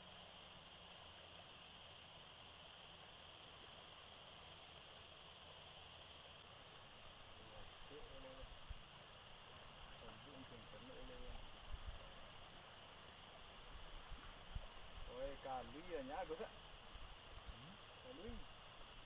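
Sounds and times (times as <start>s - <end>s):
high-pitched insect chorus: 0.0s - 19.0s.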